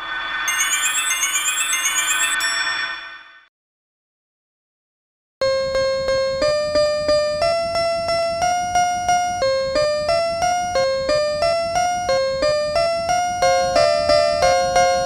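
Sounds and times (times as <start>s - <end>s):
electronic chime melody: 0.5s - 3.0s.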